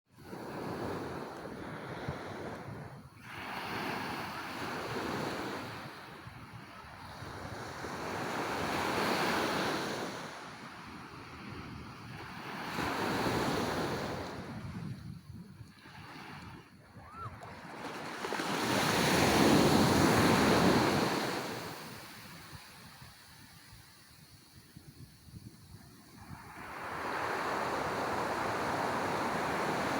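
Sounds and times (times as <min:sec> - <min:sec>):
waves washing onto beach: 0:15.6 - 0:23.8, 0:26.3 - 0:29.9.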